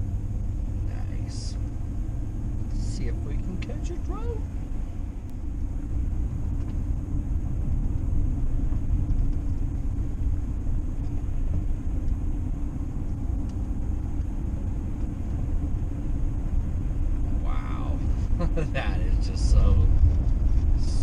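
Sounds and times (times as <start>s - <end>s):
vehicle road and engine rumble: 0.0s - 21.0s.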